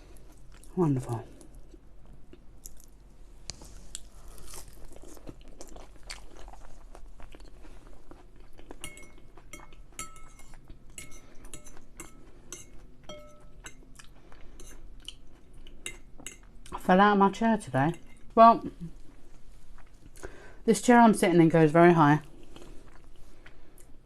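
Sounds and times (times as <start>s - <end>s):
chewing and crunching food: 0.0s - 16.8s, 18.0s - 20.4s, 22.2s - 24.0s
cutlery clinking against a dish: 8.8s - 13.8s.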